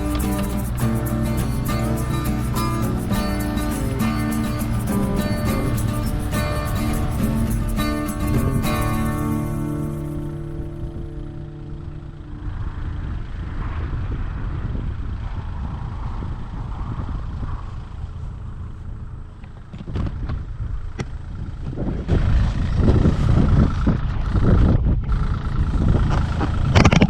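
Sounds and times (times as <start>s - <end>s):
excavator engine running: 0.0s - 13.8s.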